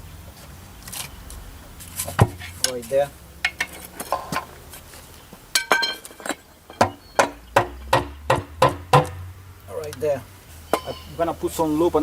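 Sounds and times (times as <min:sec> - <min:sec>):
hand tools clinking on metal: 0:05.6 - 0:07.4.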